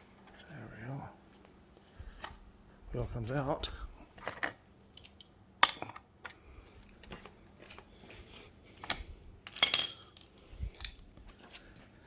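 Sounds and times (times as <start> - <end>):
metal tools clinking: 4.2 - 6.0, 8.8 - 11.1.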